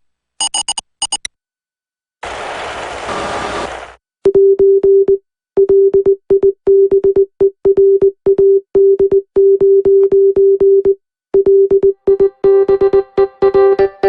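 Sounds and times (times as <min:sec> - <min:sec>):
morse code beeps: 0:00.4 - 0:01.3.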